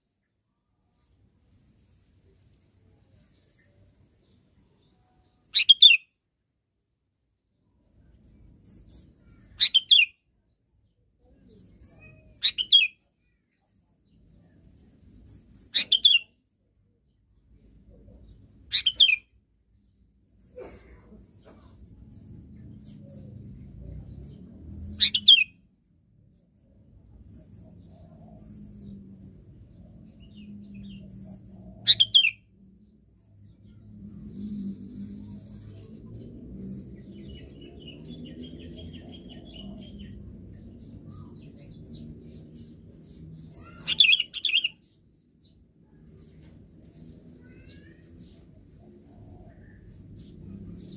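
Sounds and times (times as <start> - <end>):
faint low rumble: 21.1 - 25.1, 32.5 - 43.7, 44.9 - 50.9.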